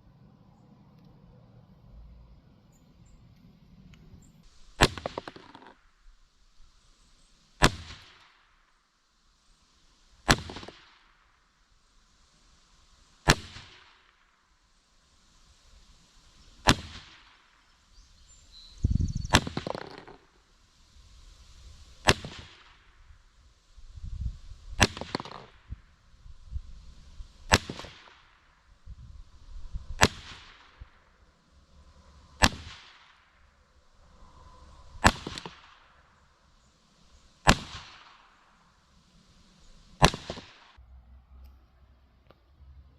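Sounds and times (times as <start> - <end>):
air pistol shots: 4.6 - 5.8, 7.6 - 8.6, 10.2 - 11.3, 13.2 - 14.3, 16.6 - 17.6, 19.2 - 20.4, 22.0 - 23.0, 24.7 - 25.9, 27.4 - 28.6, 29.9 - 31.1, 32.4 - 33.3, 34.9 - 36.0, 37.4 - 38.6, 39.9 - 40.8.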